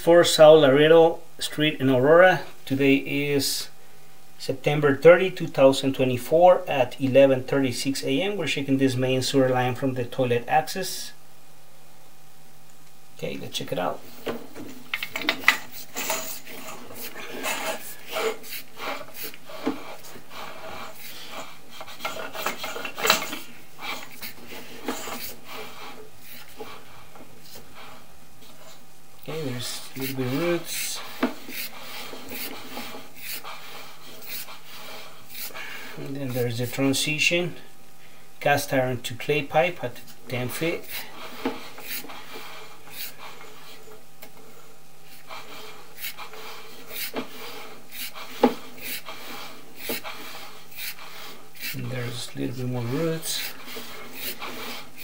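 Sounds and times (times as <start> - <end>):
steady low hum: 0.0 - 55.0
cable scraping in drain: 14.2 - 26.9.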